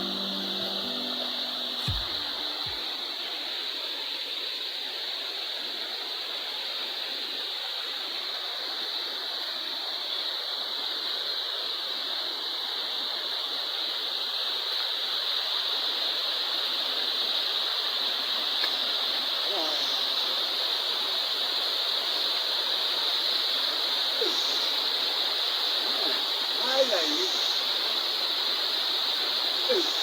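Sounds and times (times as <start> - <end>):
waterfall rushing: 0.0 - 2.8.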